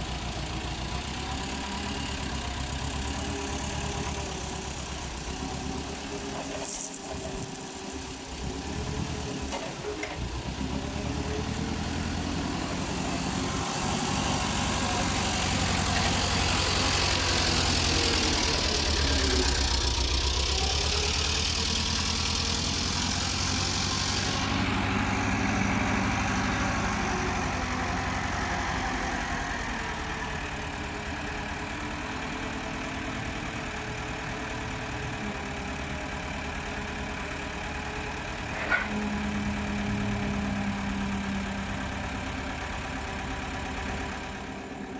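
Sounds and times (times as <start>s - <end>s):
vehicle engine running: 10.2s - 44.9s.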